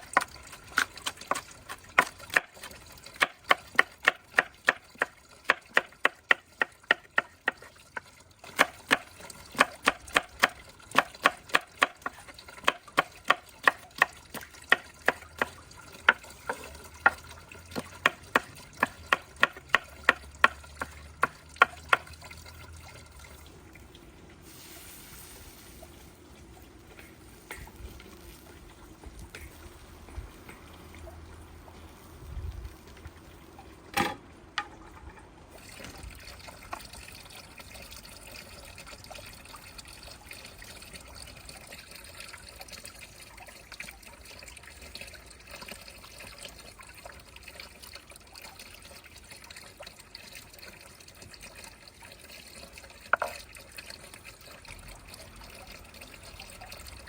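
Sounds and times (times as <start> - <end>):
faint steady hiss: 22.0 - 46.0.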